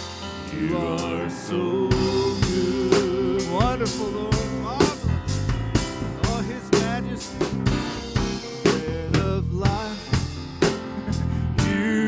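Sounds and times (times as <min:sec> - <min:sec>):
people singing: 0:00.0 - 0:05.1, 0:06.2 - 0:07.5, 0:11.6 - 0:12.0
bass and keyboard chords: 0:00.0 - 0:12.0
drum kit beat: 0:01.9 - 0:12.0.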